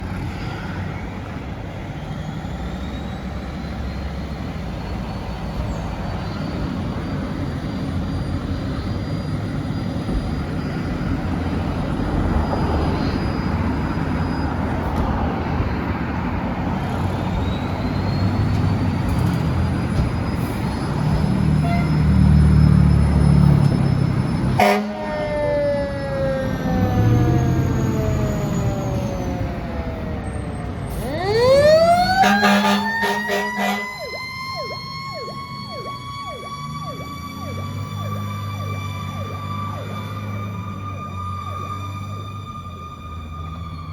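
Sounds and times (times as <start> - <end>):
fire truck engine: 0.0 - 43.9
siren wailing: 16.8 - 43.9.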